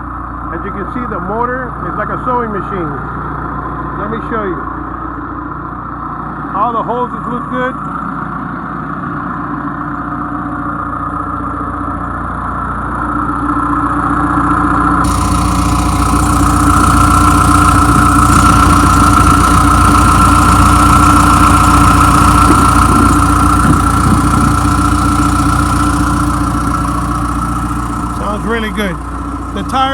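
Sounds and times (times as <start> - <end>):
diesel engine idling: 10.2 - 29.9.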